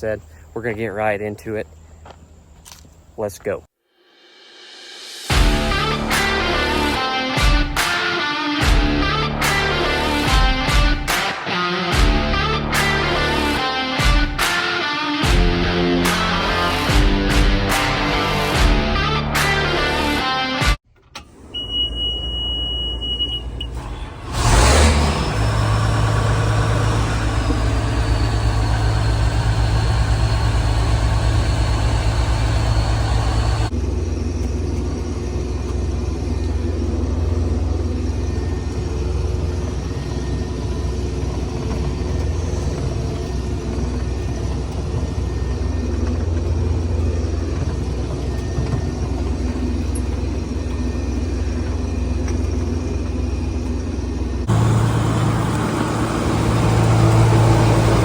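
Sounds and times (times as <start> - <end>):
harvester engine drone: 5.3 - 11.0, 11.9 - 20.2, 21.2 - 58.0
high whine: 25.2 - 58.0.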